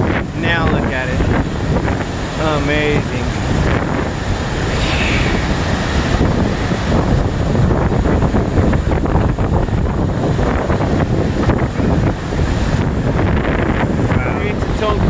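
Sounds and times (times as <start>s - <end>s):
wind buffeting microphone: 0.0s - 15.0s
waterfall roaring: 4.2s - 13.2s.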